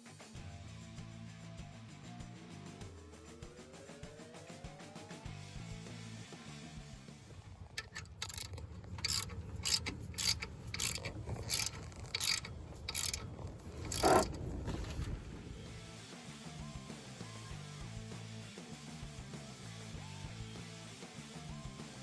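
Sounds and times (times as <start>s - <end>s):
ratchet wrench clicking: 7.7s - 14.4s.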